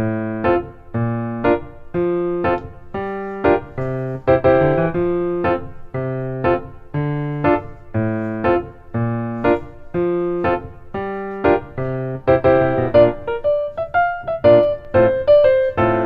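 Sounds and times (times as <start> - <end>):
bouncy piano music: 0.0 - 16.0.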